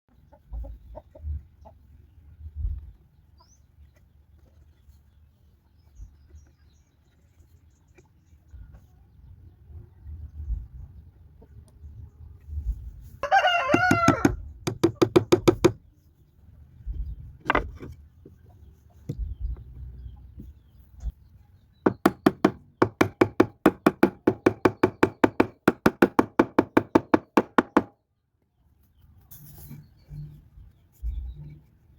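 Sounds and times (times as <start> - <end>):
chickens clucking: 0.1 - 2.3
small birds chirping: 0.1 - 12.9, 14.3 - 31.9
hammering wooden pegs: 13.6 - 15.8, 21.8 - 28.0
dull low thumps: 16.8 - 17.8, 19.1 - 21.2.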